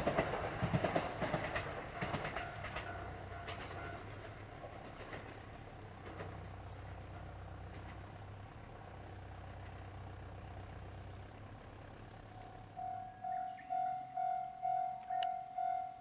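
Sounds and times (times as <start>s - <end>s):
diesel railcar engine rumble: 0.0s - 16.0s
level crossing bell ringing: 12.6s - 16.0s.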